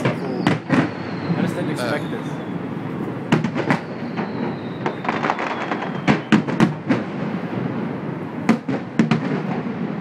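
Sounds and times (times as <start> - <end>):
high firework whistle: 0.0 - 6.9
fireworks bangs: 0.0 - 10.0.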